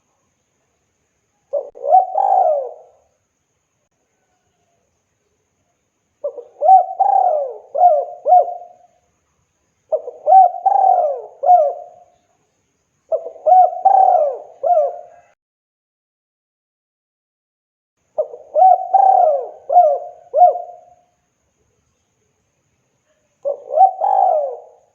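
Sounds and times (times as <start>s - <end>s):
dove cooing: 1.5s - 3.1s, 6.2s - 8.9s, 9.9s - 12.1s, 13.1s - 15.4s, 18.2s - 21.0s, 23.4s - 24.9s.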